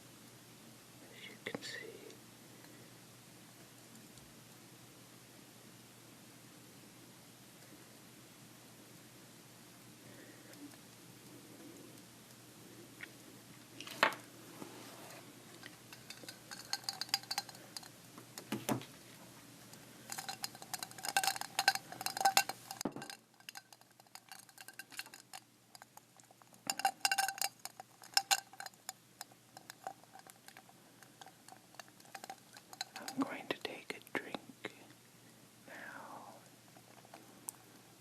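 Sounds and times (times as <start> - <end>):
ice cubes clinking in glass: 15.9 - 18.5, 20.1 - 25.9, 26.7 - 29.0, 31.4 - 33.2.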